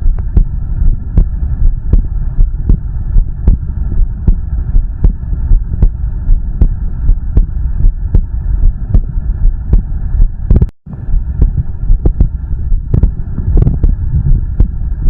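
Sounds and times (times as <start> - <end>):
heartbeat thumps: 0.0 - 15.0
steady low rumble: 0.0 - 15.0.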